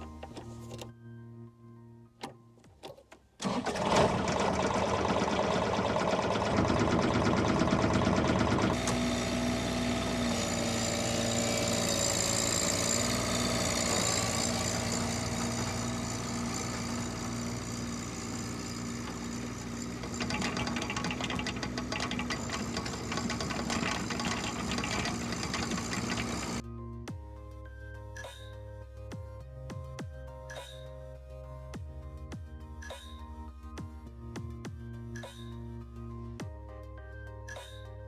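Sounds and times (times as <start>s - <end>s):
power tool motor rattling: 3.4s - 26.6s.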